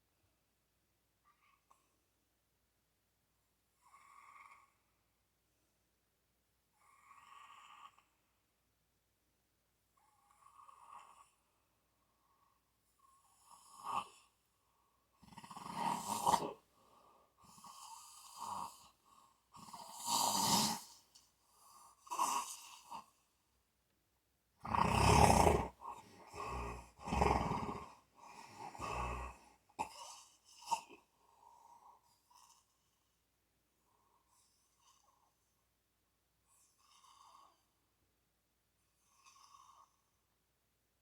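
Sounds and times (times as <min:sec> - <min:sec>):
person snoring: 0:15.2 - 0:16.6, 0:19.6 - 0:21.0, 0:24.6 - 0:31.0.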